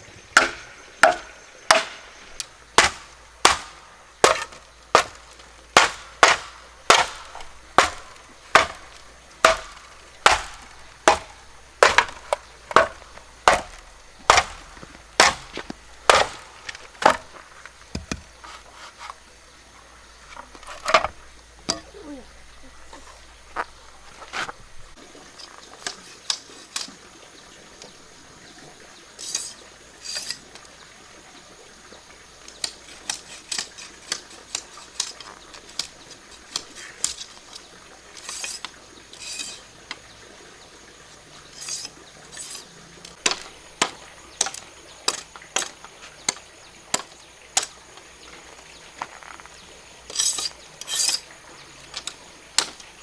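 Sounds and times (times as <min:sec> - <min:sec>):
objects clicking and knocking: 0:20.3 - 0:22.0, 0:32.5 - 0:40.0, 0:41.5 - 0:53.0.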